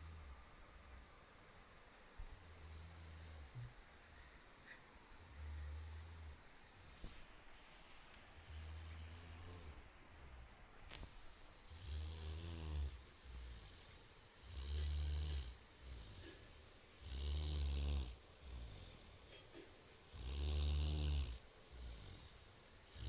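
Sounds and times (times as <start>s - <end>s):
person snoring heavily: 14.4s - 16.4s, 17.0s - 19.1s, 20.1s - 22.3s.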